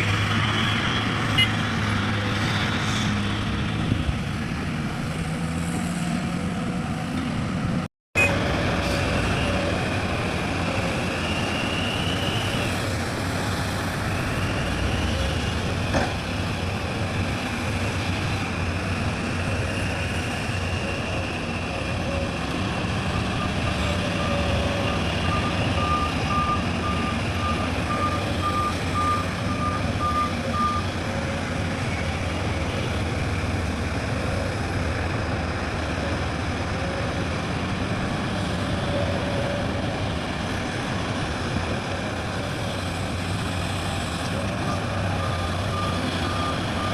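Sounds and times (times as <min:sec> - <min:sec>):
heavy diesel machinery running: 0:00.0 - 0:46.9
reversing alarm beeping: 0:23.0 - 0:30.9, 0:45.2 - 0:46.9.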